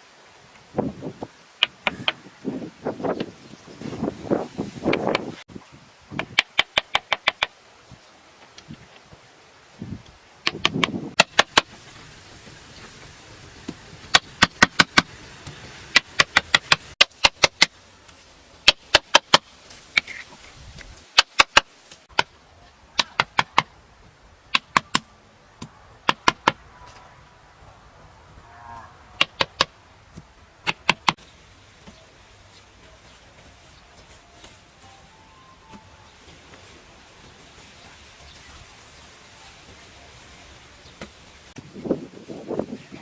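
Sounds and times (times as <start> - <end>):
scraping rustle: 31.1 - 35.1, 35.9 - 41.7.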